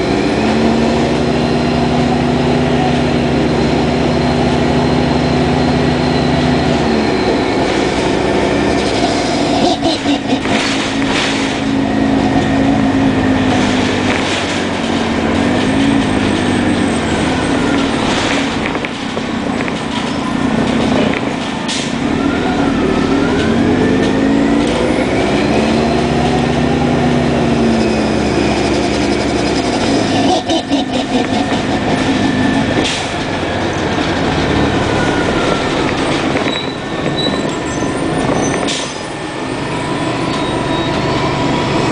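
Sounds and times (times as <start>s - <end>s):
bus engine running: 0.0s - 41.9s.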